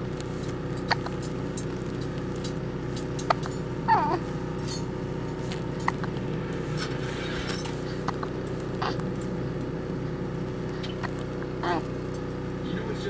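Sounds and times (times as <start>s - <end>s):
steady low hum: 0.0s - 13.0s
baby vocalizing: 0.8s - 1.3s, 3.2s - 4.3s, 5.4s - 6.2s, 7.7s - 9.2s, 10.7s - 12.0s.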